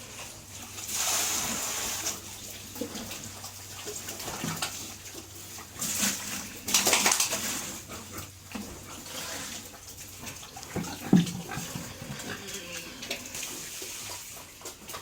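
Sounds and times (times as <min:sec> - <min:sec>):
water splashing: 0:09.5 - 0:14.5
short animal noises: 0:10.6 - 0:13.3.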